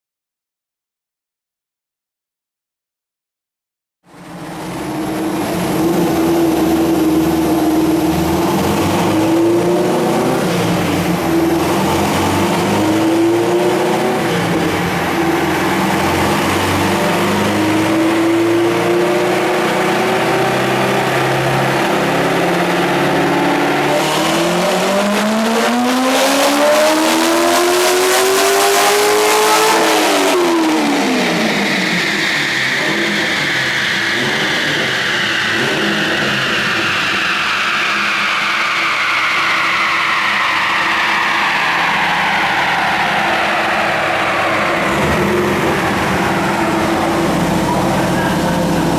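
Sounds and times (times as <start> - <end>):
car engine revving: 4.1 - 48.9
hiss: 29.7 - 48.3.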